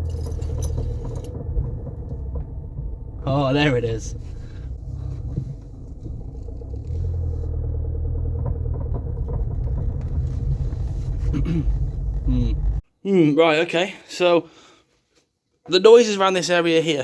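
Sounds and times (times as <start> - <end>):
car road and engine rumble: 0.0 - 12.8.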